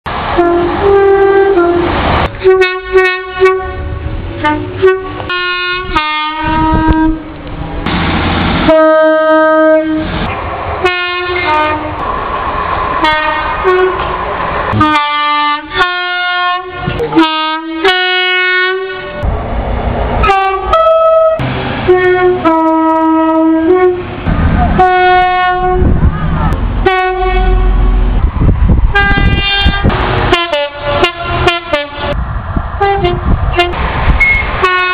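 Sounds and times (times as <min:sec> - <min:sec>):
rumbling train noise: 0:00.0 - 0:34.9
train horn blasts: 0:00.4 - 0:07.4, 0:08.6 - 0:12.0, 0:13.0 - 0:14.0, 0:14.7 - 0:19.2, 0:20.2 - 0:24.1, 0:24.8 - 0:26.0, 0:26.8 - 0:28.0, 0:28.9 - 0:32.2, 0:32.8 - 0:33.8, 0:34.6 - 0:34.9.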